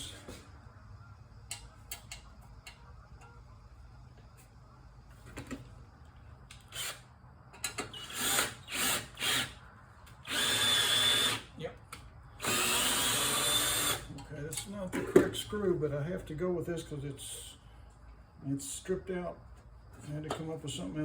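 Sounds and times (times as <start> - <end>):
power drill driving screw: 6.6 - 7.0, 7.9 - 9.6, 10.2 - 11.4, 12.4 - 14.0.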